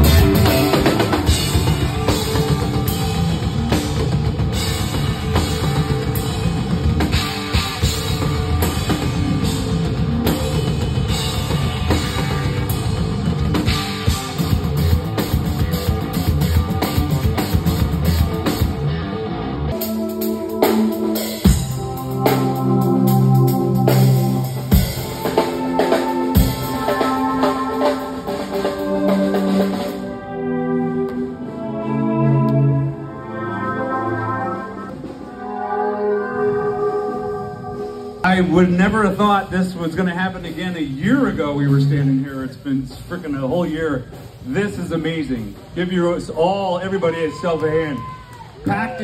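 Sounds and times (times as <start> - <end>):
rock drumming on drum kit: 0.0 - 19.0, 19.7 - 30.0
rock backing track with guitar: 0.0 - 44.5.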